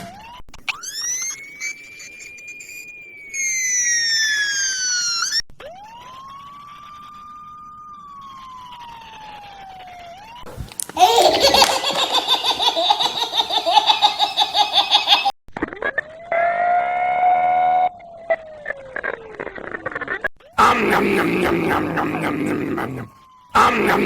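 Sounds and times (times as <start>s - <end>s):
fire truck siren wailing: 0.8s - 10.4s
rapidly pulsing distorted siren: 5.6s - 10.4s.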